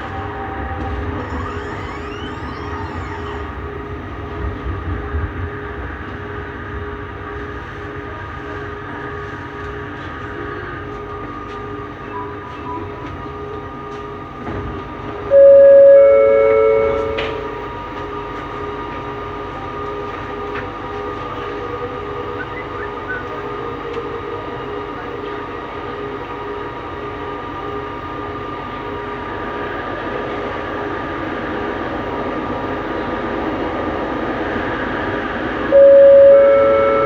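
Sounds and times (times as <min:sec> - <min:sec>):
loud steady tone: 0:00.0 - 0:09.9, 0:15.2 - 0:18.8, 0:35.6 - 0:37.0
metro train interior rumble: 0:00.0 - 0:37.0
electric whines: 0:00.1 - 0:04.7.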